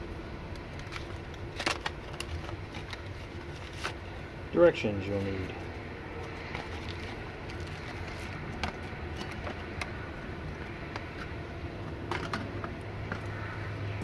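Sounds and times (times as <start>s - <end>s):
low hum: 0.0s - 4.6s.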